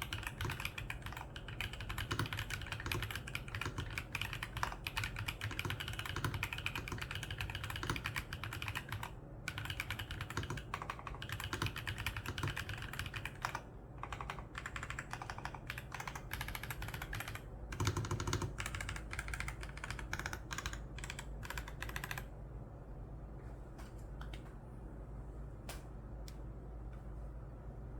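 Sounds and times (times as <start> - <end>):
mechanical keyboard typing: 0.0 - 22.3.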